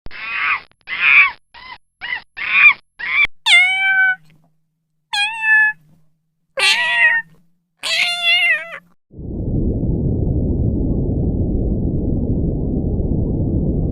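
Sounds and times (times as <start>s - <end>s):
cat meowing: 0.2s - 4.4s, 5.1s - 5.9s, 6.6s - 8.9s
low rushing noise: 9.1s - 13.9s.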